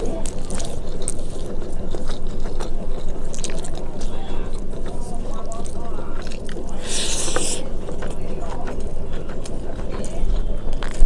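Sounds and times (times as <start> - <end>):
crisp rustling crunch: 0.0 - 8.1
chewing: 0.0 - 11.0.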